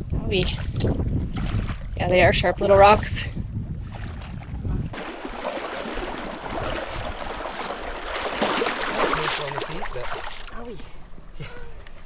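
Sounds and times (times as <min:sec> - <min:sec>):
feet wading through river water: 0:03.8 - 0:11.2.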